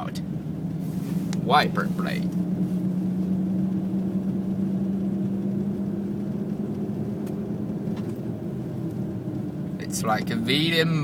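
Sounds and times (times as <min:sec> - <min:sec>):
car engine drone: 0:00.0 - 0:11.0
road noise: 0:00.0 - 0:11.0.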